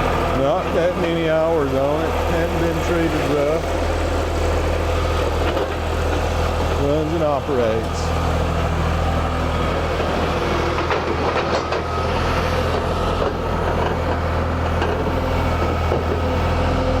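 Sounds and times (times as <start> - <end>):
diesel engine running: 0.0 - 17.0
metallic clanks and rattles: 10.8 - 11.9.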